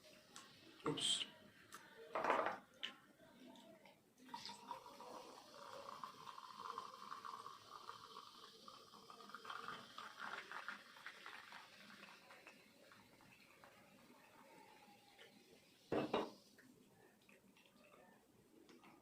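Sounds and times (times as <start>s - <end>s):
watery hiss with crackles: 4.8s - 16.7s.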